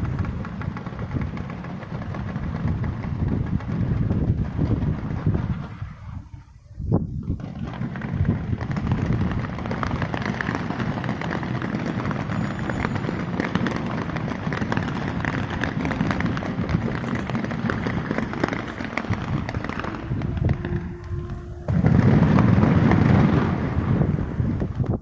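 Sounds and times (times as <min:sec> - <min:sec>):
fireworks bangs and crackling: 0:00.0 - 0:25.0
low rumble: 0:02.3 - 0:25.0.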